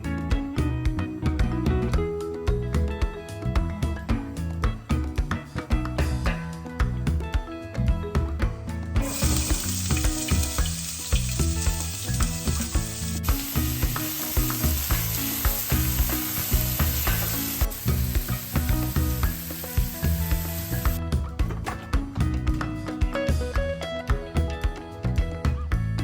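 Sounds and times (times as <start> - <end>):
background music with beat: 0.0 - 26.0
food sizzling in hot oil: 9.0 - 21.0.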